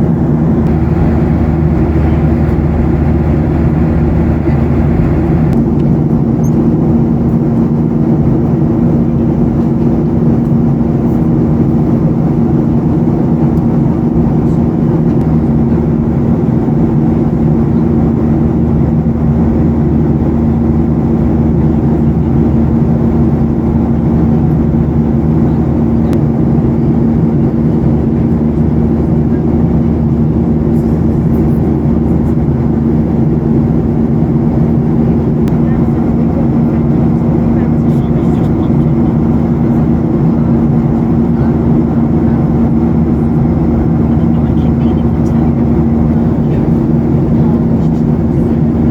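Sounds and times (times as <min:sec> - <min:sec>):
rushing air: 0:00.0 - 0:05.6
airliner engine drone: 0:00.0 - 0:48.9
constant low hum: 0:00.0 - 0:48.9.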